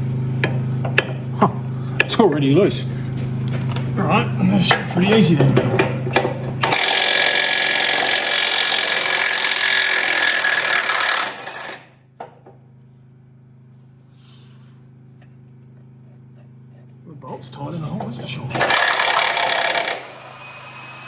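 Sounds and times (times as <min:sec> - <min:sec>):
impact wrench running: 0:03.8 - 0:12.0, 0:17.6 - 0:21.0.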